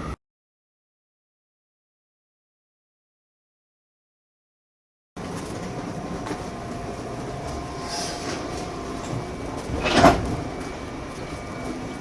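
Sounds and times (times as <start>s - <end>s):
train rumbling: 5.2s - 12.0s.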